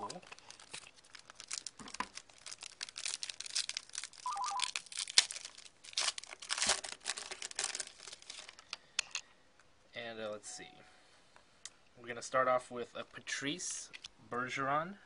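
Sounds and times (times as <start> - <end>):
card pack wrapper tearing: 0.0 - 8.6
short electronic beep: 4.3 - 4.6.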